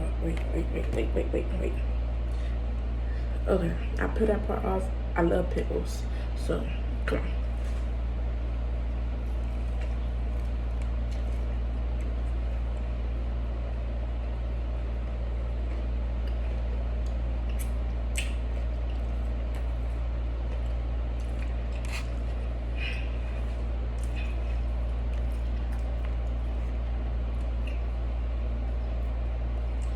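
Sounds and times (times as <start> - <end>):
steady low hum: 0.0 - 29.9
wet chewing: 8.8 - 13.6, 14.8 - 29.9
mouth clicks: 17.5 - 18.4.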